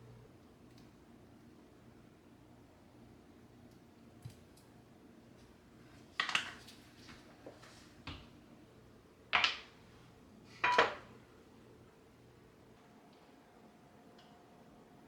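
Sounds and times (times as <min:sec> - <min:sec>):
dishes clattering: 0:10.6 - 0:11.1.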